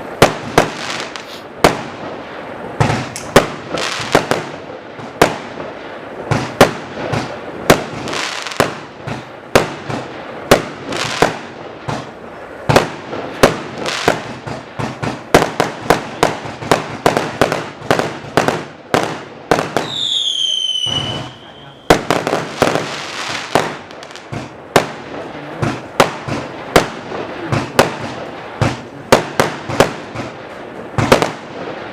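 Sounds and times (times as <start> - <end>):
firework shots firing: 0.0 - 31.9.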